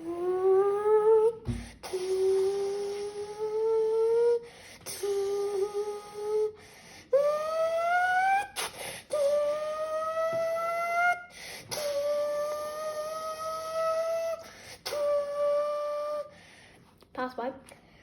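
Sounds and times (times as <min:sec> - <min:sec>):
child imitating car engine: 0:00.0 - 0:16.3
child breathing: 0:04.3 - 0:07.2, 0:08.6 - 0:09.3, 0:11.2 - 0:12.4, 0:14.4 - 0:14.9, 0:16.2 - 0:17.0.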